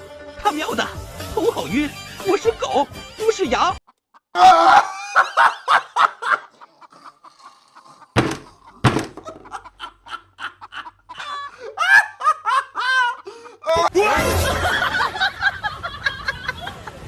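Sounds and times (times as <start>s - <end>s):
snickering laughter: 4.1s - 13.5s, 14.4s - 17.0s
sharp thuds: 8.2s - 9.5s.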